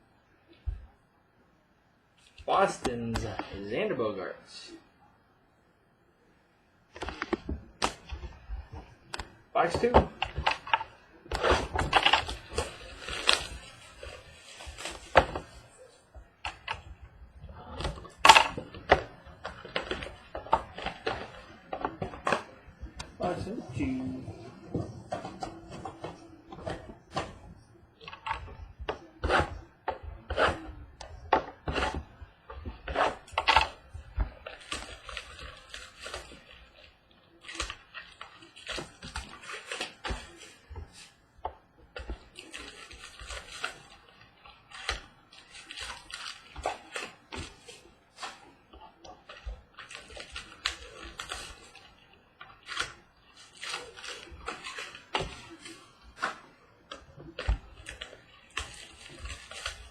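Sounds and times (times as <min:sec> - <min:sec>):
plastic wrap crinkling and tearing: 0:07.0 - 0:29.7, 0:31.5 - 0:59.9.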